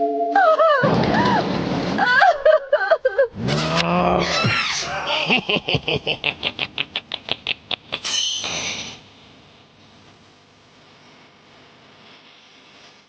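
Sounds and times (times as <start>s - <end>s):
squeaky animal cries and chirps: 4.4s - 4.9s, 8.0s - 8.9s.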